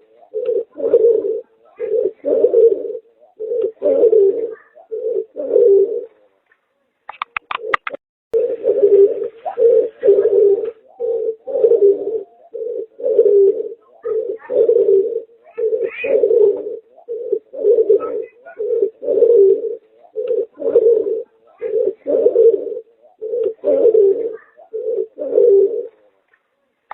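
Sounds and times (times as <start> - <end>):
pigeon cooing: 0.0 - 26.9.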